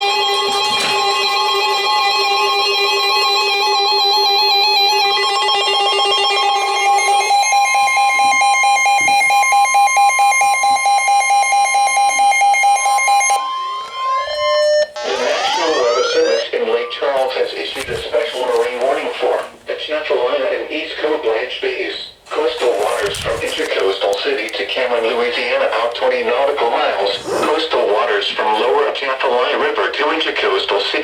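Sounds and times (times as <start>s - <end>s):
electronic alert tones: 13.9s - 17.2s.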